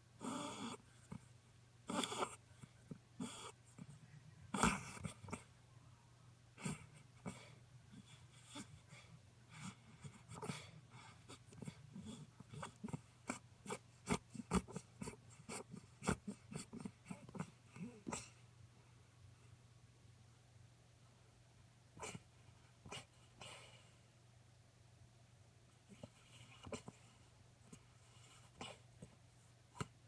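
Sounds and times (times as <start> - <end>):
dog snorting and snuffling: 0.2 - 5.5, 6.6 - 18.4, 22.0 - 23.8, 25.9 - 30.0.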